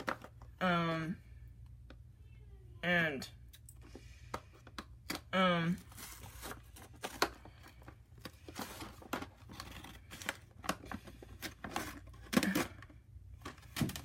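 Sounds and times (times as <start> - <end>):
packaging rustling and tearing: 5.8 - 14.0.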